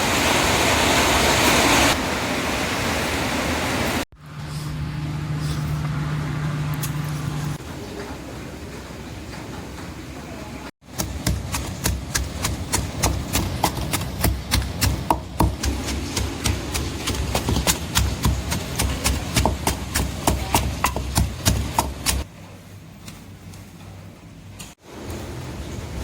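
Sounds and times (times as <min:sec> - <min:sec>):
knife chopping on cutting board: 0:10.9 - 0:22.3.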